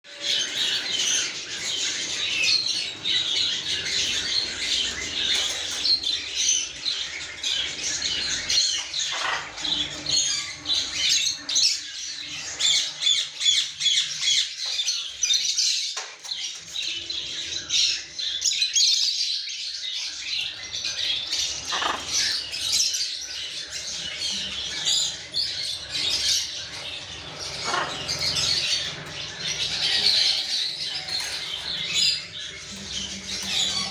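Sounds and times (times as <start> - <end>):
parrots squawking and chattering: 0.1 - 18.6, 19.8 - 33.9.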